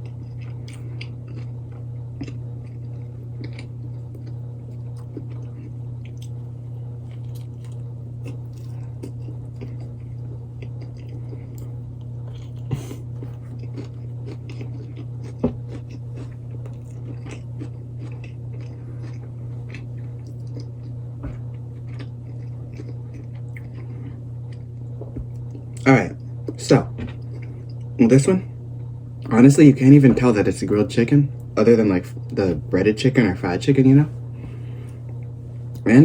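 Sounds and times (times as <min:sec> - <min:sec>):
person chewing food: 0:00.0 - 0:28.0
low hum: 0:00.0 - 0:36.0.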